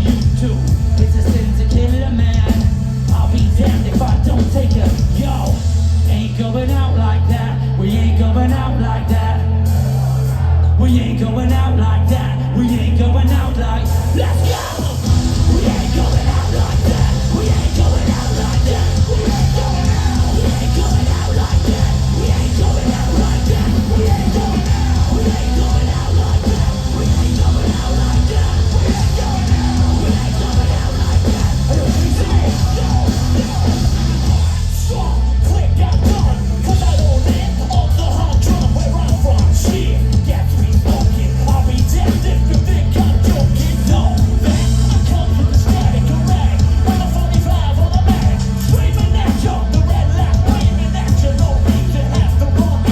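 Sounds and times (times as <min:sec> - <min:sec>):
heavy rock band playing: 0:00.0 - 0:52.9
shouted vocals: 0:07.0 - 0:40.5.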